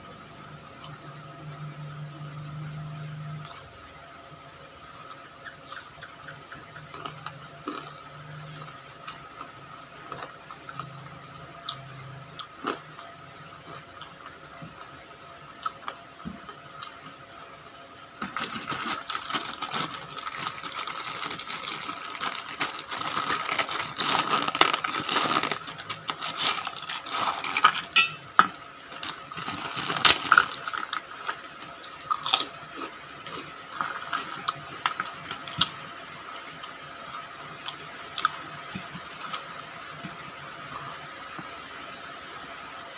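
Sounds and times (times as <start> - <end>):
crunchy fried chicken chewing: 5.1 - 11.0, 18.2 - 28.0, 28.6 - 35.8.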